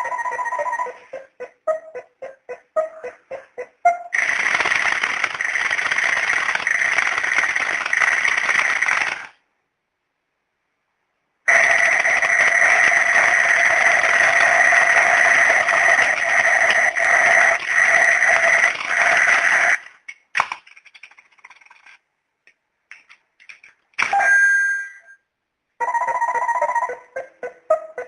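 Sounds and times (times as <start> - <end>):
alarm clock ringing: 11.5 - 19.8, 25.8 - 27.0.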